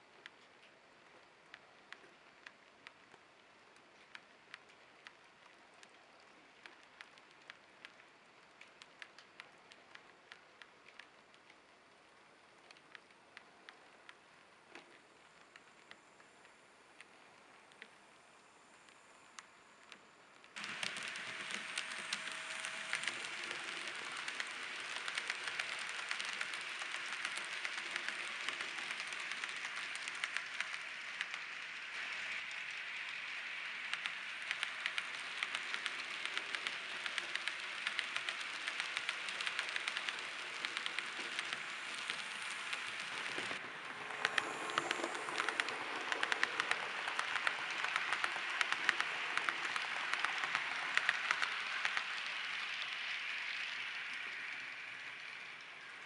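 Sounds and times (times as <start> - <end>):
model train wheels clattering: 19.4 - 56.0
rolling hiss: 20.5 - 56.0.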